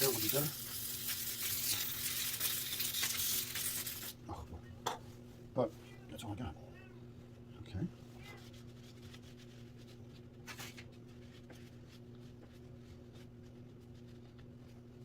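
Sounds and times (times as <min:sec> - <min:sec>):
hands rubbing and scratching: 0:00.0 - 0:04.1, 0:08.4 - 0:14.8
hissing scrape: 0:00.0 - 0:04.1.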